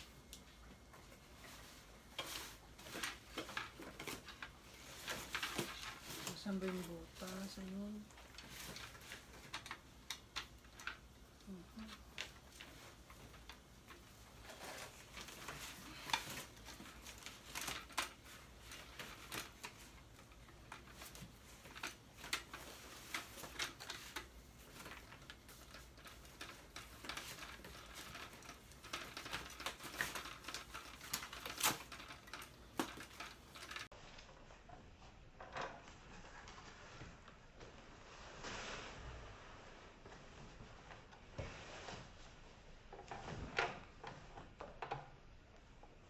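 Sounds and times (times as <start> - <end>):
plastic parts clicking and knocking: 0.0 - 33.9
rustling: 0.0 - 34.7.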